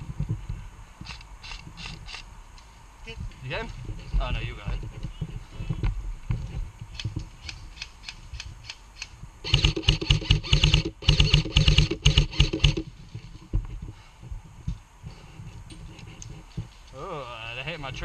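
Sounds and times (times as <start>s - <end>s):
airsoft gun full-auto bursts: 1.1s - 2.2s, 7.0s - 12.9s
gearbox whirring: 1.1s - 2.2s, 7.0s - 12.9s.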